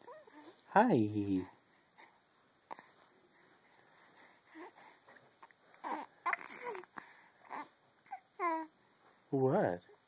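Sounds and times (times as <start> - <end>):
baby cooing and squealing: 5.8 - 8.7.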